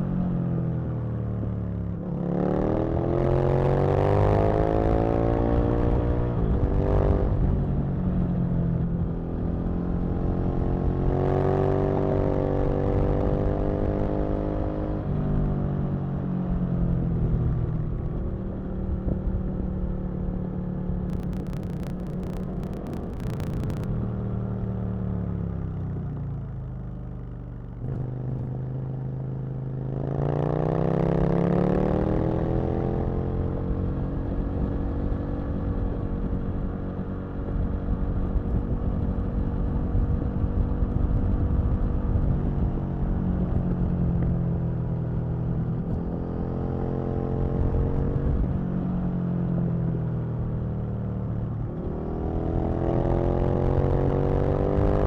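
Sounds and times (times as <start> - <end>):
motorcycle engine revving: 21.1 - 23.9.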